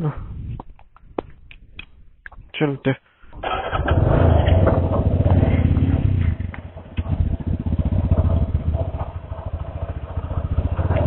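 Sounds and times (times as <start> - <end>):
motorcycle engine running: 3.4 - 11.0.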